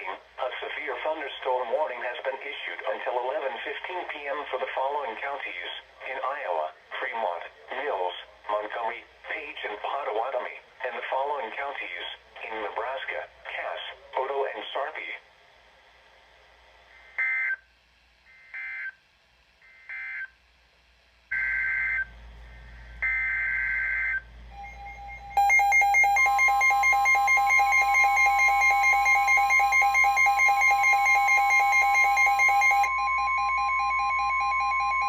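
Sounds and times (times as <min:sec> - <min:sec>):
pulsing attention alarm tones: 0:23.0 - 0:35.0
screeching data bursts: 0:24.6 - 0:35.0.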